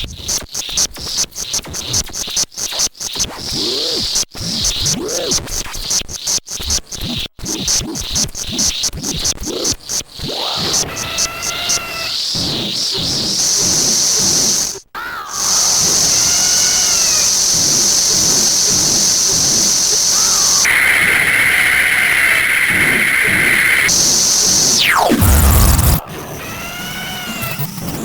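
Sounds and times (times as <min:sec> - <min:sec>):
glitchy electronic hiss: 0:13.2 - 0:14.8, 0:15.4 - 0:28.0
faint warbling electronic calls: 0:15.4 - 0:27.7
high electronic tone: 0:18.6 - 0:26.1
fast falling electronic sweep: 0:19.4 - 0:27.6.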